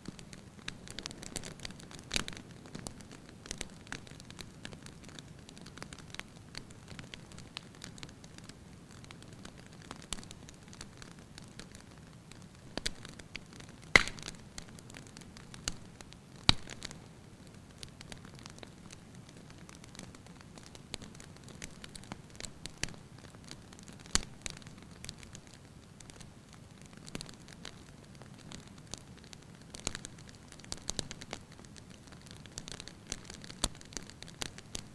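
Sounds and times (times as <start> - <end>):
fire crackling and popping: 0.0 - 34.9
wood fire hissing: 12.3 - 18.0.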